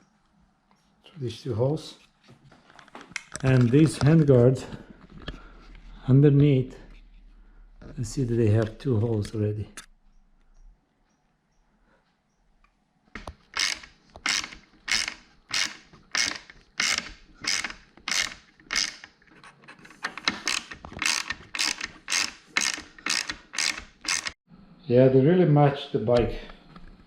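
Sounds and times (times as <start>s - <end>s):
hand ratchet driving screws: 13.2s - 24.4s.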